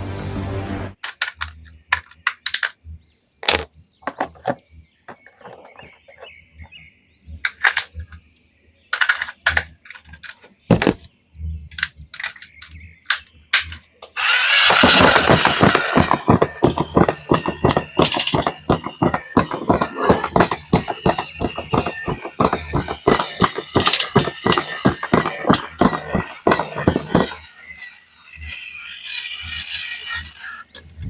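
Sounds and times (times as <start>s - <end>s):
objects clicking and knocking: 1.0s - 2.8s, 3.4s - 6.8s, 7.4s - 8.2s, 8.9s - 11.1s, 11.7s - 27.5s.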